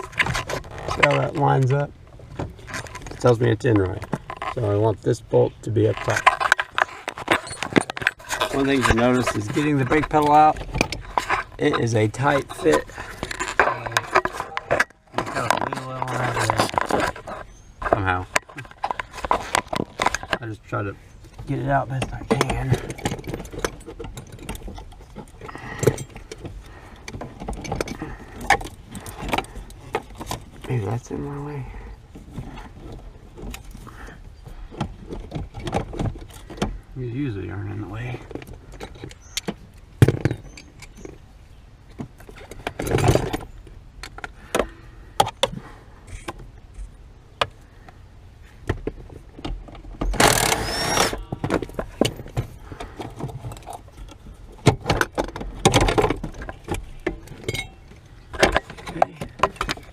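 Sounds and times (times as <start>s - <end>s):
scraping rattle: 5.7s - 41.2s
metal knocks and rattles: 5.8s - 31.1s
metallic clicks and rattles: 21.3s - 30.7s.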